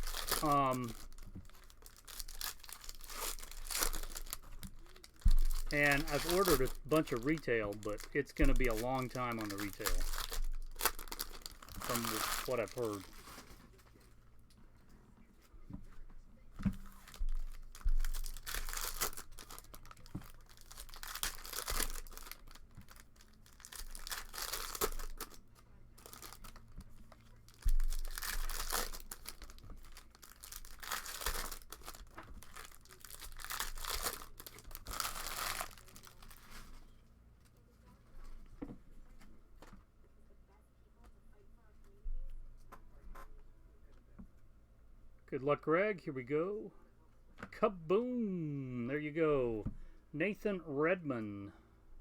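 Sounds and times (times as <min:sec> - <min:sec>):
card packs torn and crinkled: 0:00.0 - 0:13.6, 0:16.9 - 0:36.8.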